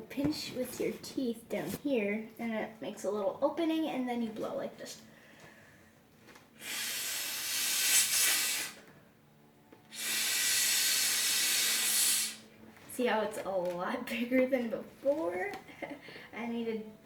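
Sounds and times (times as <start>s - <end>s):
breath blown into inflatable valve: 6.6s - 8.9s, 9.9s - 12.4s.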